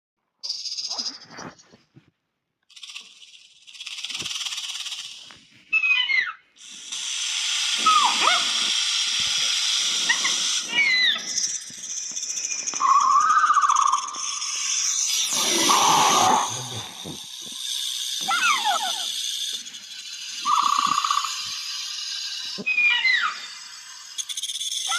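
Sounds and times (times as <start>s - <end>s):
snake-like hisses: 2.7s - 5.6s, 6.6s - 24.9s
gliding cries and squeals: 5.7s - 6.5s, 7.8s - 8.8s, 10.0s - 24.9s.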